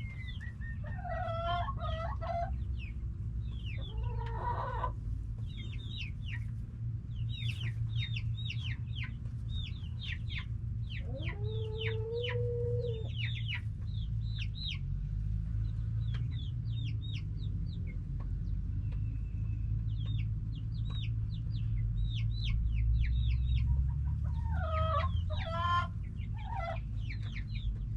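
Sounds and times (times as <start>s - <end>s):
chicken drawn-out call: 0.0s - 2.6s, 3.8s - 5.0s, 11.0s - 13.4s, 24.3s - 26.9s
chickens chirping: 0.0s - 27.9s.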